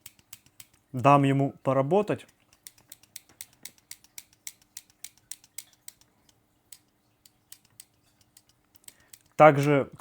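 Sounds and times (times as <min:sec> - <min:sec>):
multitool pliers clicking: 0:06.7 - 0:09.7.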